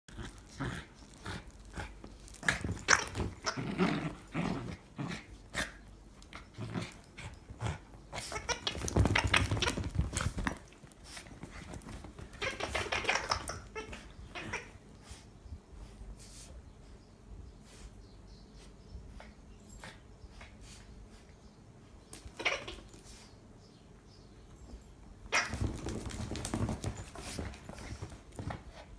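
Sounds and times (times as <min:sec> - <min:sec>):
dog growling: 0:00.1 - 0:05.8, 0:06.4 - 0:10.2.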